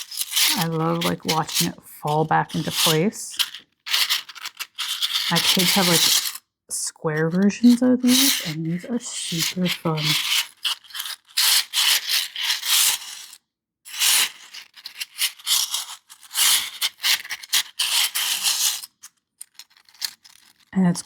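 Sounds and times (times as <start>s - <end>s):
plastic pieces rattling: 0.0s - 6.4s, 8.0s - 13.4s, 14.0s - 20.8s.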